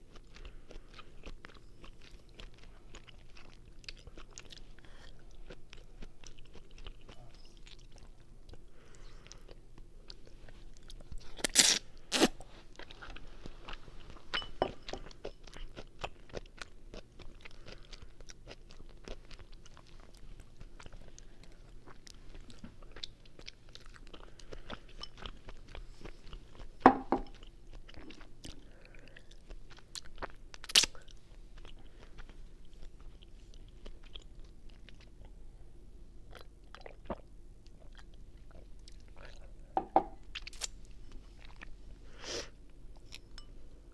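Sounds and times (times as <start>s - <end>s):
close chewing and biting: 0.0s - 35.4s.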